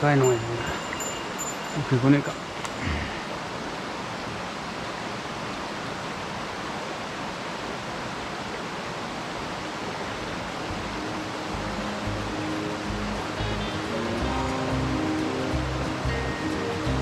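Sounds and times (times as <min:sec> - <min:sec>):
mountain stream flowing: 0:00.0 - 0:17.0
background music: 0:10.7 - 0:17.0.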